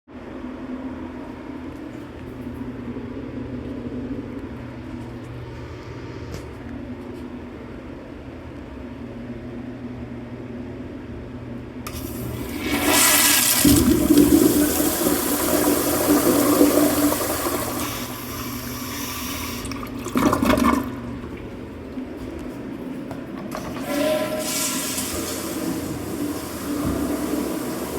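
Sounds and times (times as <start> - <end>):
toilet gurgle: 11.9 - 21.7, 23.4 - 27.9
toilet flushing: 11.9 - 22.3, 23.3 - 27.9.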